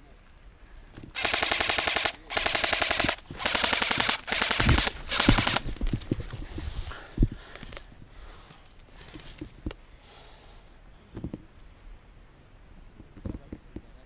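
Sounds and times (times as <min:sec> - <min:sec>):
airsoft gun firing bursts: 0:01.2 - 0:05.7.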